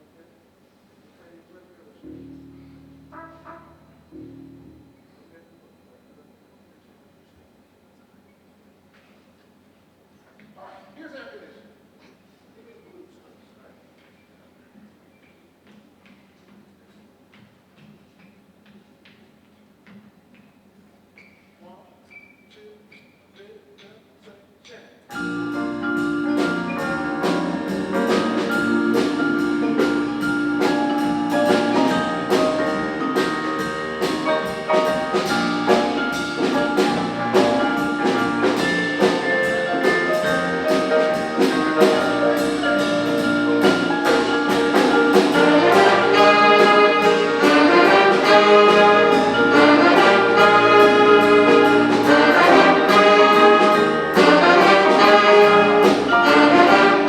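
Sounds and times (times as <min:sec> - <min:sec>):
brass instruments: 0:02.0 - 0:04.9, 0:25.1 - 0:57.0
jazz big band playing: 0:02.0 - 0:05.0, 0:25.1 - 0:57.0
steady drum beat: 0:25.1 - 0:57.0.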